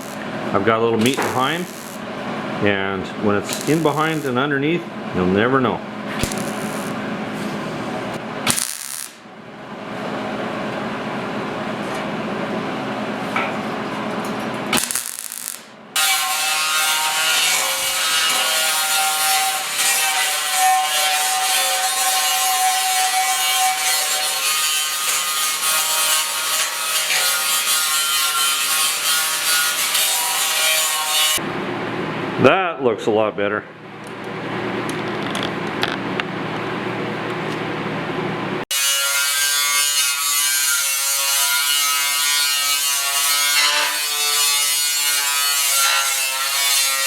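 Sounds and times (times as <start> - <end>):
power grinder on steel: 0.0 - 0.3, 1.0 - 2.0, 3.5 - 4.3, 6.2 - 7.0, 14.8 - 31.4, 38.7 - 47.0.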